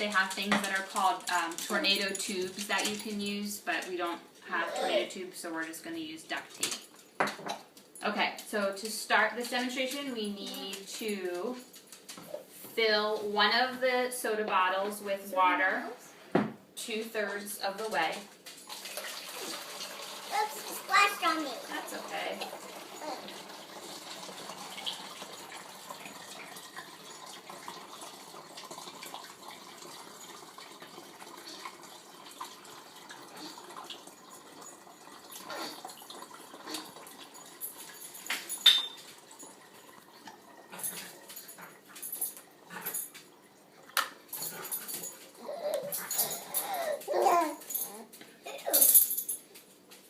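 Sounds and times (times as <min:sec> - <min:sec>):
water pouring into a bottle: 0:18.6 - 0:38.0.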